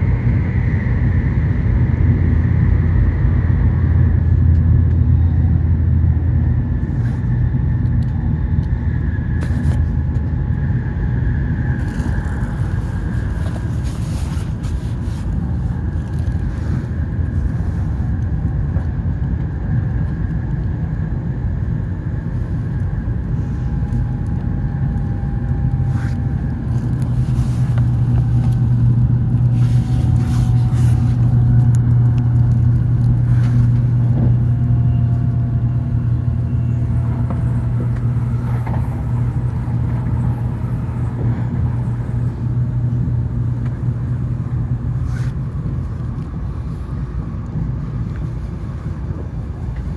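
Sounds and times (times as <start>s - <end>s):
train rumble inside carriage: 0.0s - 49.9s
faint whine falling in pitch: 20.7s - 47.7s.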